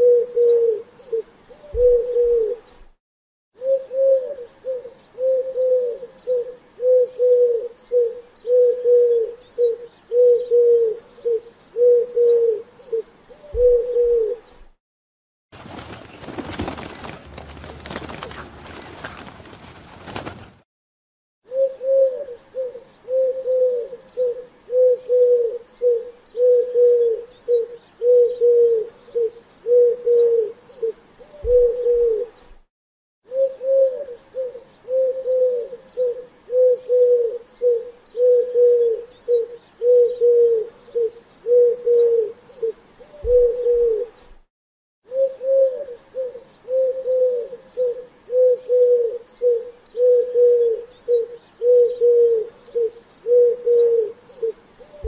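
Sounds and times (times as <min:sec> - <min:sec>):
pigeon cooing: 0:00.0 - 0:02.7, 0:03.6 - 0:14.6, 0:21.4 - 0:32.4, 0:33.3 - 0:44.3, 0:45.1 - 0:55.0.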